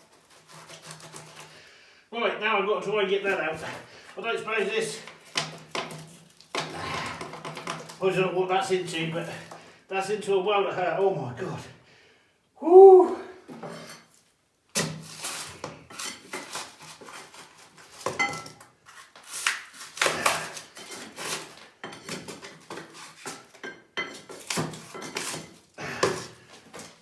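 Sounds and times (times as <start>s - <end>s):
scraping and knocking of rubble: 4.7s - 8.2s, 14.8s - 27.0s.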